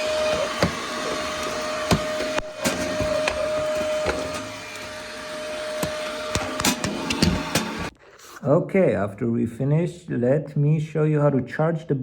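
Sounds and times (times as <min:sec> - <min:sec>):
stick vacuum cleaner whining: 0:00.0 - 0:08.0.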